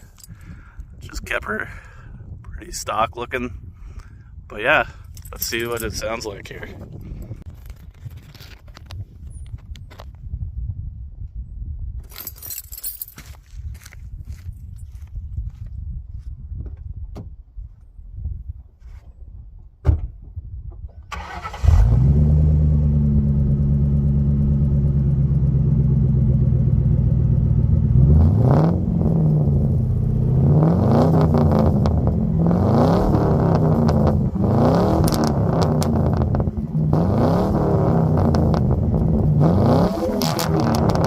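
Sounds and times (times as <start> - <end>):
car engine idling and revving: 21.2 - 41.0.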